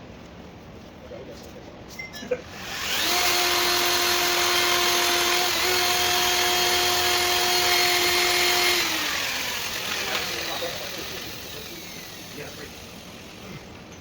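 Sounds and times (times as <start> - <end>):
power tool motor whining: 2.5 - 13.4.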